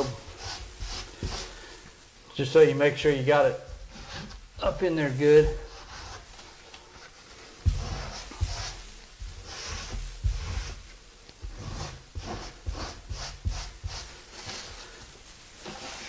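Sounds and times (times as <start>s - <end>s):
putty knife scraping grout on tile: 0.0s - 1.8s, 3.7s - 15.0s
dull knock: 5.4s - 5.8s, 7.6s - 10.8s.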